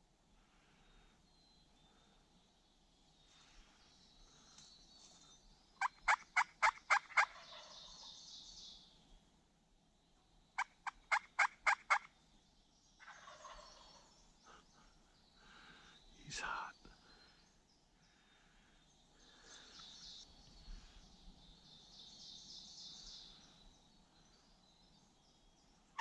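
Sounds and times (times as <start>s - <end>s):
turkey yelping: 5.8s - 7.7s.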